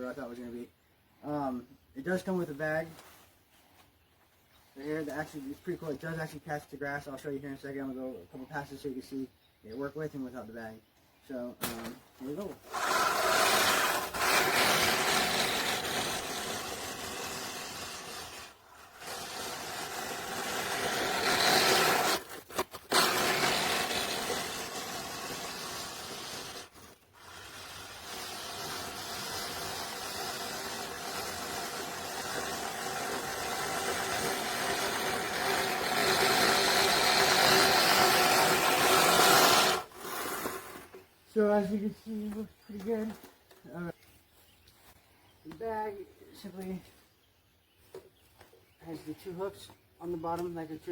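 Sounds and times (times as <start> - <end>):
push reel mower whirring: 12.6 - 40.9.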